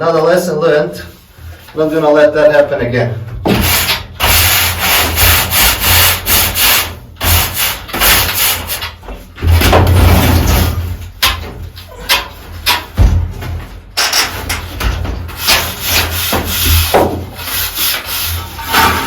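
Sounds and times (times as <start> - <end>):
scraping strokes on wood: 15.3 - 19.0.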